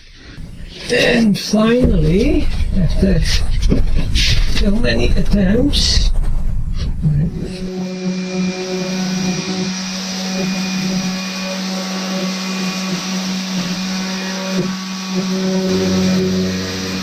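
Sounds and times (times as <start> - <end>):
electric power tool motor: 7.7 - 17.0.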